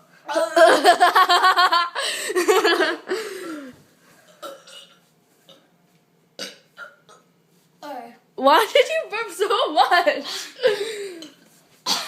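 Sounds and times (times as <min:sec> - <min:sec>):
loud rough burp: 0:06.4 - 0:07.2.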